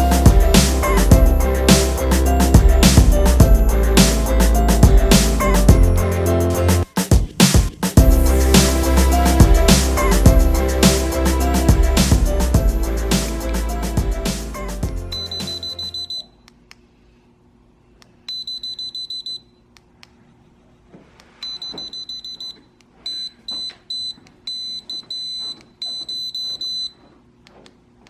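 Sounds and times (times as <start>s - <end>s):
steady electronic tone: 0.0s - 6.9s, 8.0s - 16.1s
background music: 0.0s - 16.0s
electronic alert beeps: 15.0s - 16.3s.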